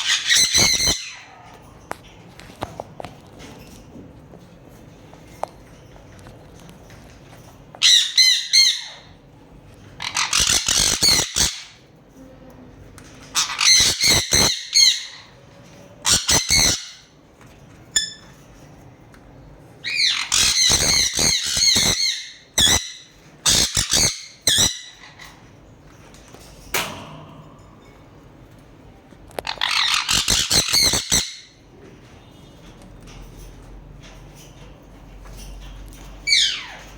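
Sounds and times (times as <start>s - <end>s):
parrot screeching: 0.0s - 1.6s, 7.8s - 9.2s, 10.0s - 11.8s, 13.3s - 15.3s, 16.0s - 17.1s, 19.8s - 25.4s, 29.4s - 31.6s, 36.2s - 36.9s.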